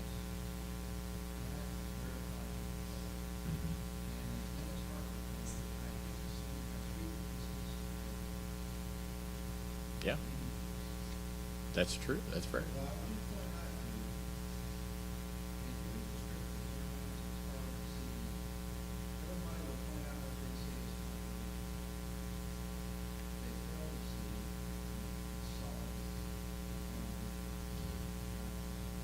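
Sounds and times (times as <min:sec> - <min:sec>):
electrical mains hum: 0:00.0 - 0:29.0
faint voices: 0:01.4 - 0:08.4.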